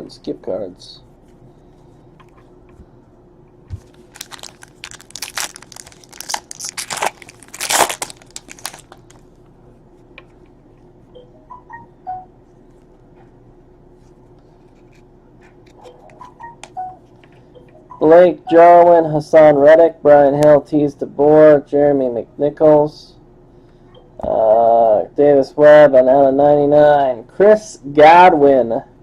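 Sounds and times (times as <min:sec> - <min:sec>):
wrapper being torn and crinkled: 0:03.8 - 0:09.2.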